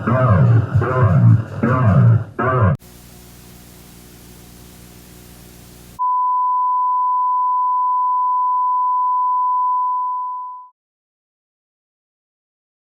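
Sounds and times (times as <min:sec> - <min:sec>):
faint low droning: 0:02.8 - 0:06.0.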